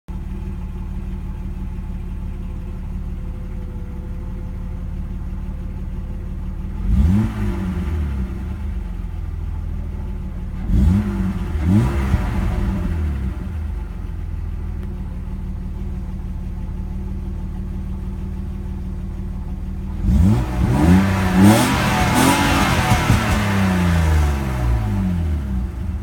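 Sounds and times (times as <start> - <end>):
car engine idling: 0.1 - 26.0
engine revving: 6.6 - 9.6, 10.4 - 14.2, 19.8 - 26.0.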